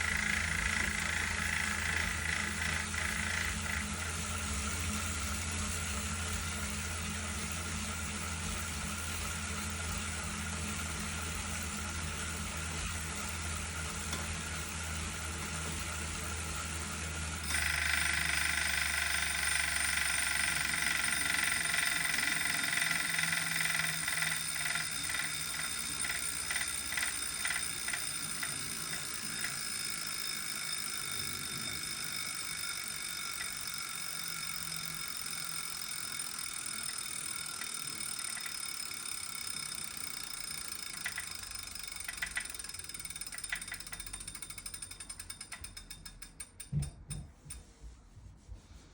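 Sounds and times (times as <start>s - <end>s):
bike trainer whirring: 0.0s - 48.9s
trainer clicking: 40.8s - 47.0s.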